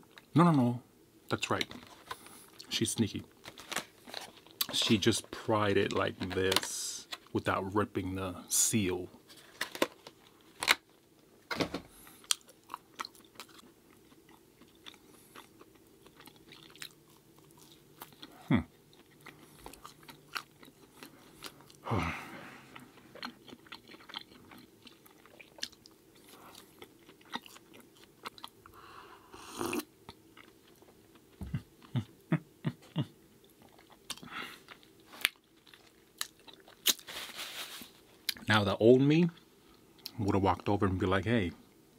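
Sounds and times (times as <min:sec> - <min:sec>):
person chewing food: 0:12.0 - 0:28.8, 0:29.5 - 0:32.1, 0:32.9 - 0:37.1.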